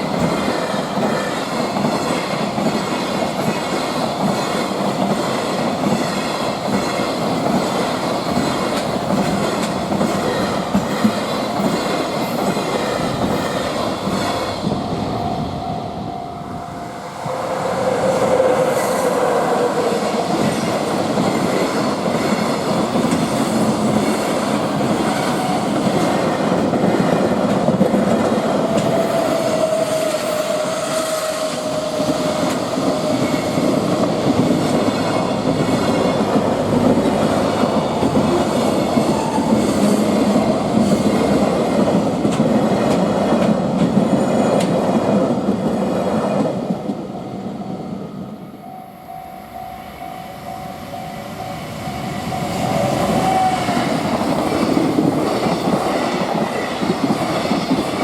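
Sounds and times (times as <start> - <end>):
wheels clattering on rails: 0.0 - 14.8
freight train rumbling past: 0.0 - 58.0.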